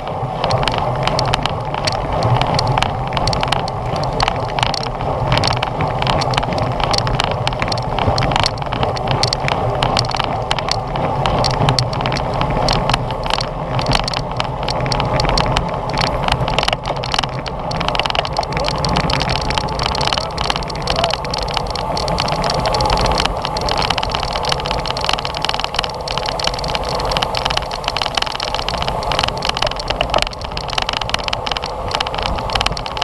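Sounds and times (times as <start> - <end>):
tyres on road: 0.0 - 33.0
wind rush: 0.0 - 33.0
rattling clicks: 0.4 - 33.0.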